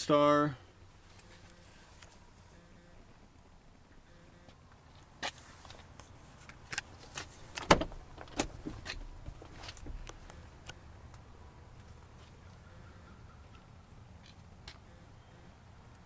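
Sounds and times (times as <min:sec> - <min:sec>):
truck door clicks and knocks: 0:07.5 - 0:10.1
truck door thud: 0:07.5 - 0:10.1.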